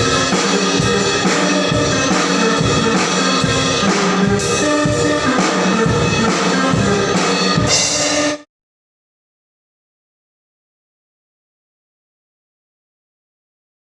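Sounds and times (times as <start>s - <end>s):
band with drums and brass: 0.0s - 8.5s.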